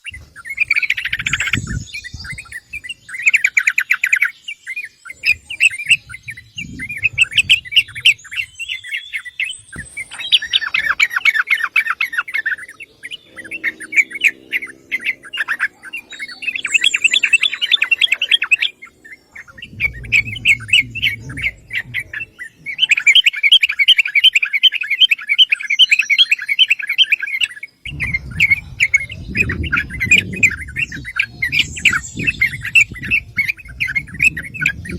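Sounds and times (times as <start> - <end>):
bird chattering calls: 0.0 - 34.9.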